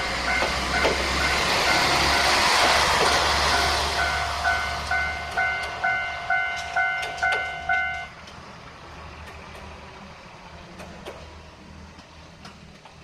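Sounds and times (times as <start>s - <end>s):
crossing warning bell ringing: 0.0s - 8.2s.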